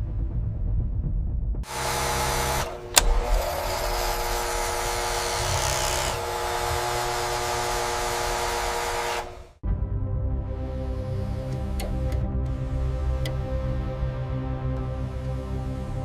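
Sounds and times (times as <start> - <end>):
machine motor whir: 1.6 - 9.6.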